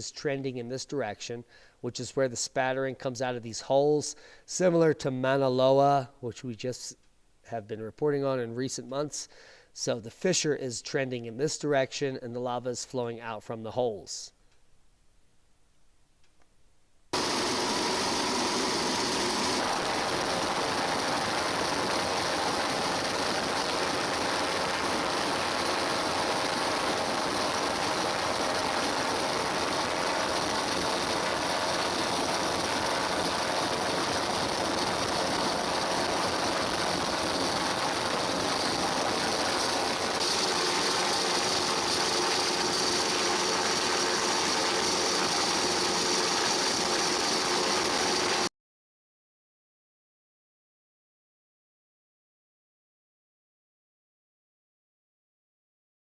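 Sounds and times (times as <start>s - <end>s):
engine-like drone with hiss: 17.2s - 48.5s.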